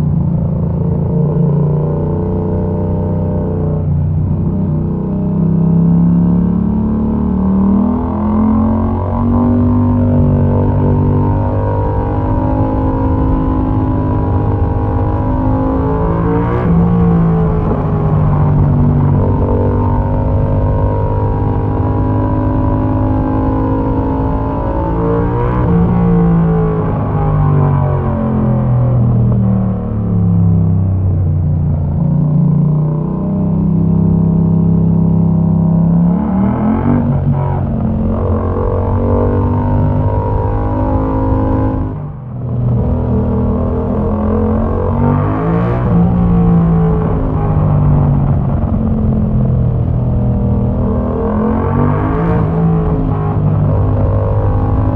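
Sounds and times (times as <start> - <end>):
motorcycle engine revving: 0.0 - 54.9
motorcycle engine running: 45.9 - 51.8.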